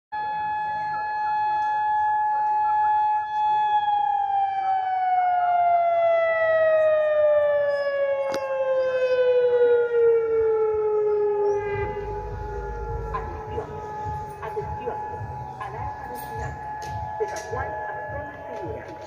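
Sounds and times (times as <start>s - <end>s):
siren falling tone: 0.2s - 19.0s
steady higher tone: 11.0s - 19.0s
low rumble: 11.5s - 19.0s.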